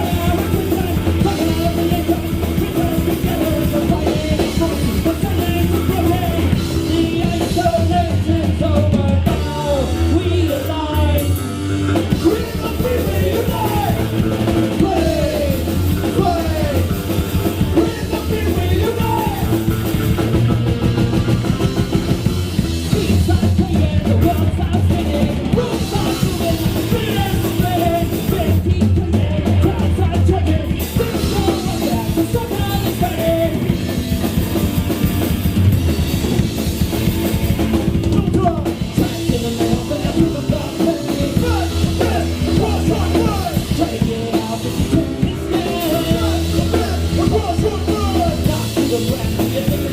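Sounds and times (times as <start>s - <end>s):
person singing: 0.0s - 34.0s, 37.9s - 49.9s
bass guitar: 0.0s - 49.9s
drum kit: 0.0s - 49.9s
guitars: 0.0s - 49.9s.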